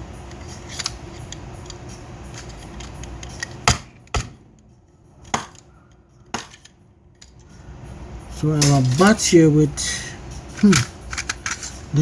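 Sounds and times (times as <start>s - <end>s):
small hard parts clicking on workbench: 10.5s - 11.8s.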